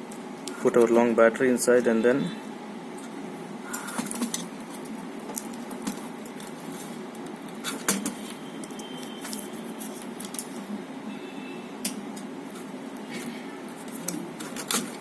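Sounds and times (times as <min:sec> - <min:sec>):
plastic parts clicking and scraping: 0:13.8 - 0:15.0.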